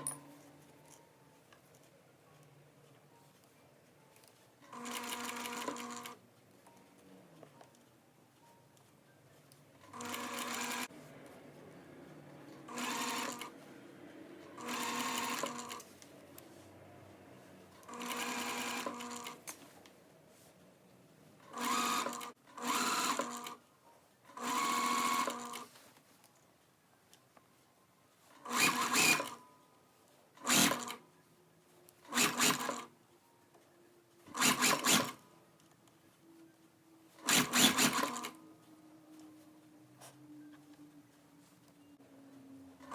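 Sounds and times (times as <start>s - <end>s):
sewing machine stitching: 4.7s - 6.2s, 9.8s - 10.9s, 12.6s - 13.6s, 14.4s - 15.9s, 17.7s - 19.6s, 21.4s - 23.6s, 24.3s - 25.7s, 28.4s - 29.4s, 30.4s - 31.0s, 32.0s - 32.9s, 34.3s - 35.2s, 37.2s - 38.4s.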